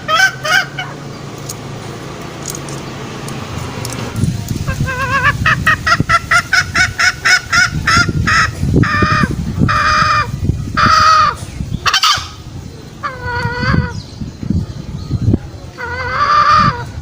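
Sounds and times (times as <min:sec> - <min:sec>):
hen cackling: 0:00.0 - 0:01.1, 0:04.6 - 0:14.0, 0:15.8 - 0:17.0.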